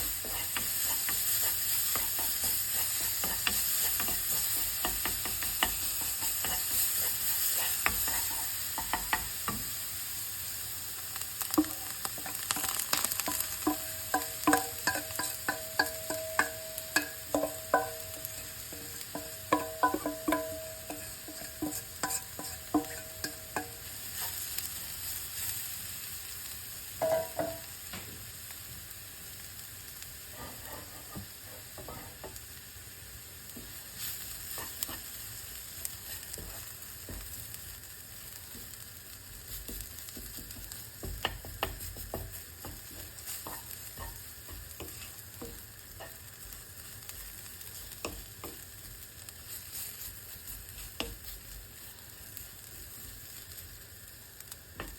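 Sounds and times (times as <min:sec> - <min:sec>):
utensil scraping against pan: 0:00.0 - 0:09.6, 0:11.5 - 0:24.5, 0:30.3 - 0:32.4
food sizzling in a frying pan: 0:00.0 - 0:54.9.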